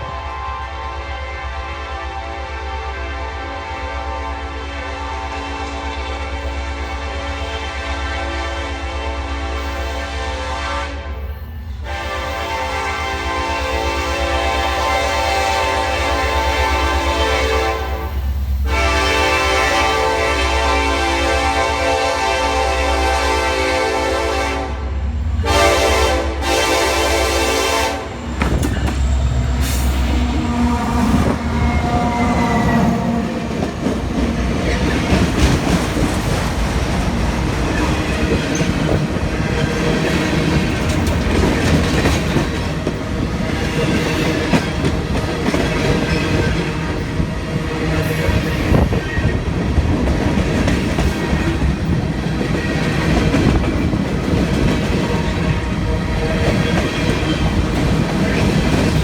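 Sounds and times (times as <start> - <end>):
freight cars rolling clatter: 28.2 - 46.6.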